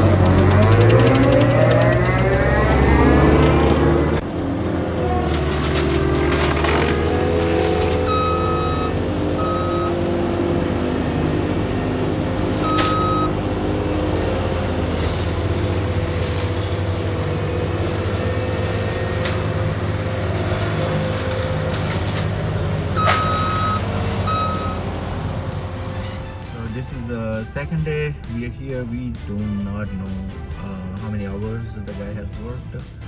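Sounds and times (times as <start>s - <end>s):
backup alarm beeping: 0.0s - 4.2s, 7.2s - 19.2s, 22.4s - 25.7s
diesel engine under load: 0.0s - 33.0s.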